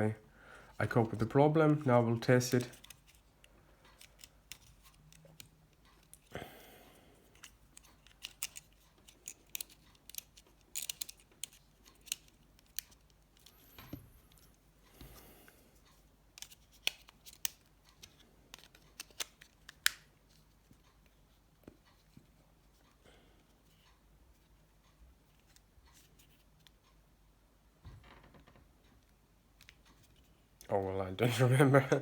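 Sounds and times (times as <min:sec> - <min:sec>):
plastic phone housing clicking: 0:07.4 - 0:12.9, 0:18.5 - 0:20.0.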